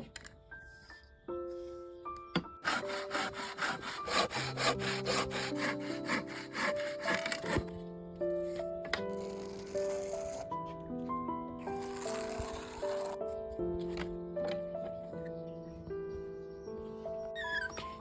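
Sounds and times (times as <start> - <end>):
soft background music: 0.0 - 18.0
hand saw cutting wood: 2.4 - 7.7, 9.2 - 10.5, 11.7 - 13.2.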